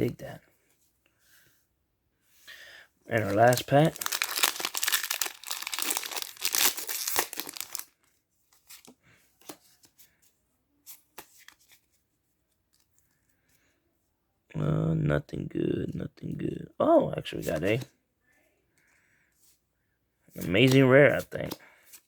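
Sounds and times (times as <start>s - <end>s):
foil wrapper tearing and crinkling: 3.2s - 7.9s.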